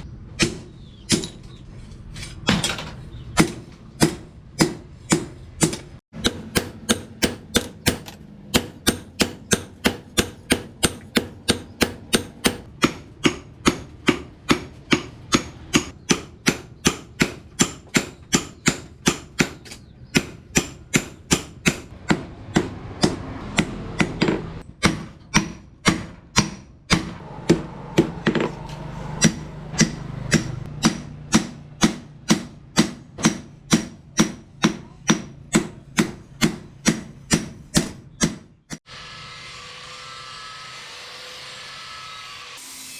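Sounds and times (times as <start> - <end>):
hammer blows on anvil: 6.2 - 19.6.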